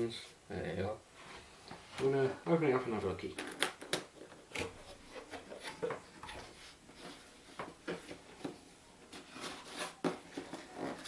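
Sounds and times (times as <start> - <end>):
cardboard packaging rustling: 3.2 - 11.0.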